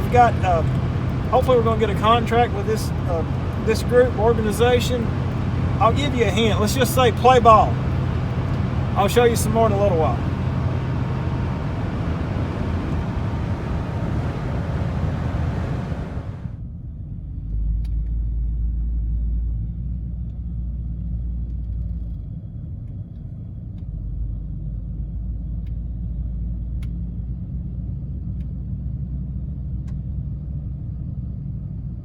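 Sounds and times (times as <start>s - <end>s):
vehicle road rumble: 0.0s - 32.0s.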